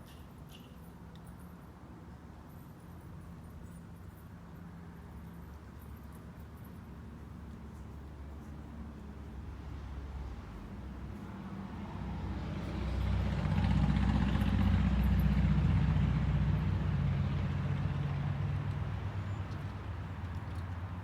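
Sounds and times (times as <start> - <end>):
vehicle engine passing by: 9.5 - 21.0.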